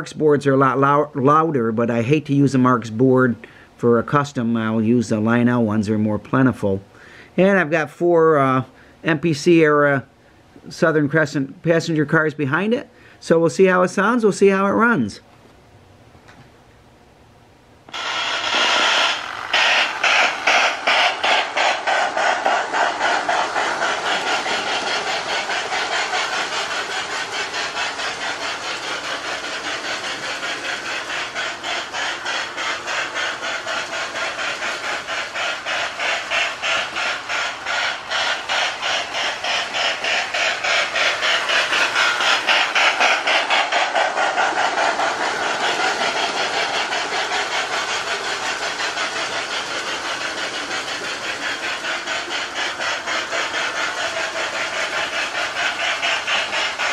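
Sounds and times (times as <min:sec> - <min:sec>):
steady hiss: 0:17.9 - 0:56.9
toy steam locomotive chuffing: 0:17.9 - 0:56.9.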